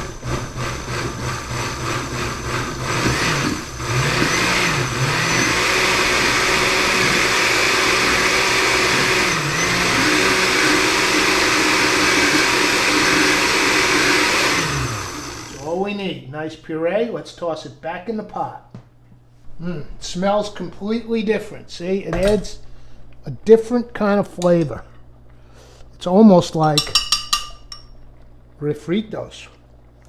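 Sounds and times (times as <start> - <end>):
blender pureeing: 0.0 - 15.9.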